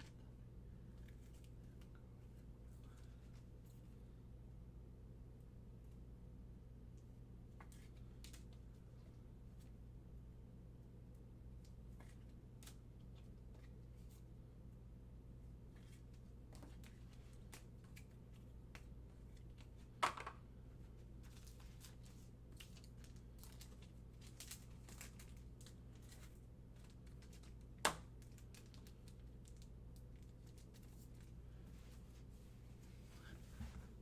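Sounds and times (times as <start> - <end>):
wrapper crinkling: 21.2 - 31.3.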